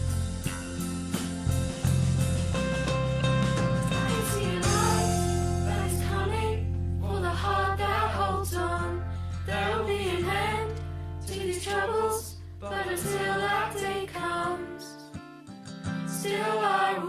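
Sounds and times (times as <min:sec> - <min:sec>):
held bass accompaniment: 0:00.0 - 0:14.3
voices singing worship song: 0:03.9 - 0:15.2, 0:16.1 - 0:17.0.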